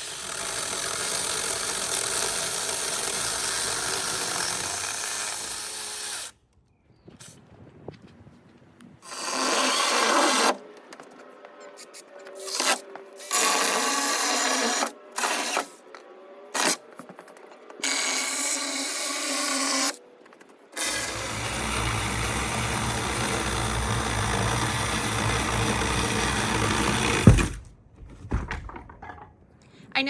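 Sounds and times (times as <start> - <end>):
mini chainsaw motor whining: 0.0 - 6.4, 9.0 - 10.6, 11.8 - 16.9, 17.8 - 20.0, 20.8 - 27.6.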